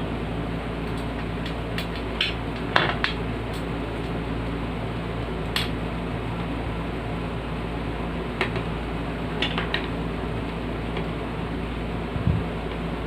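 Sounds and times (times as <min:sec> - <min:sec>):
steady low hum: 0:00.0 - 0:13.0
fan parts clicking and clinking: 0:00.8 - 0:04.6, 0:05.2 - 0:06.6, 0:08.3 - 0:11.2.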